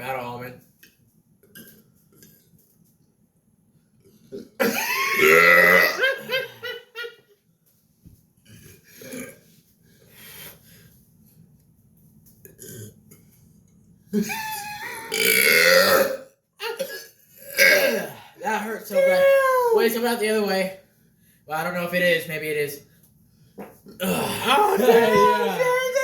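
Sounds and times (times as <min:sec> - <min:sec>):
person burping: 0:04.3 - 0:06.3, 0:09.0 - 0:09.5, 0:12.5 - 0:13.0, 0:15.0 - 0:18.3, 0:23.9 - 0:25.6.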